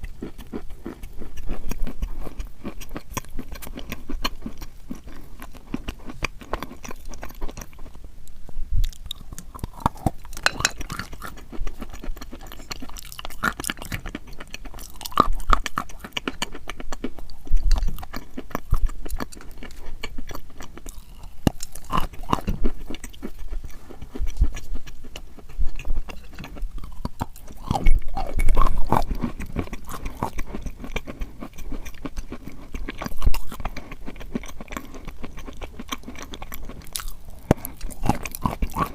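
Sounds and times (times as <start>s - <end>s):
chalk crunching while chewed: 0.0s - 38.9s.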